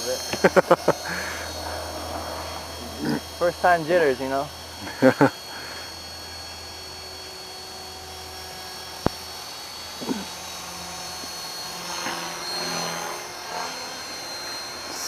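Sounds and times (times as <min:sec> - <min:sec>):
rc helicopter rotor whine: 0:00.0 - 0:15.0.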